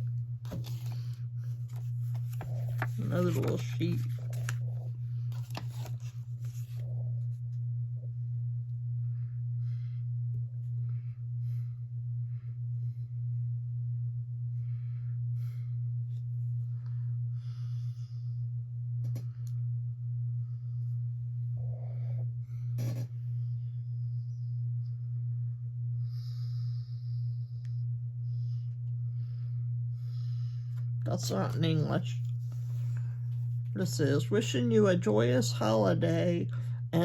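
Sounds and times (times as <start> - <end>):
steady low hum: 0.0 - 37.0
paper and cards rustling: 0.5 - 6.8.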